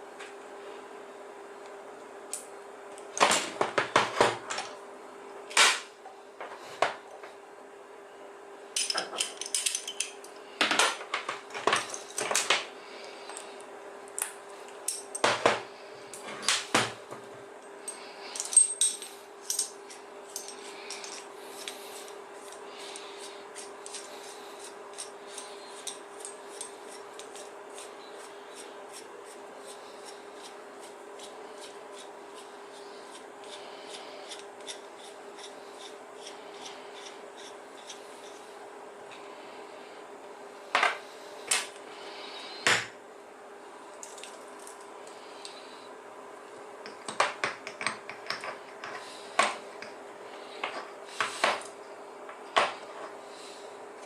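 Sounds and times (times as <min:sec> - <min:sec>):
faint steady hum: 0:00.0 - 0:54.0
metal tools clinking: 0:08.8 - 0:10.3, 0:17.9 - 0:21.7.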